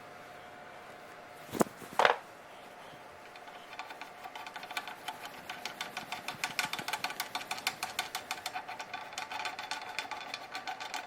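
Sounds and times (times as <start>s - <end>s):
metallic clicking and tapping: 3.3s - 11.0s.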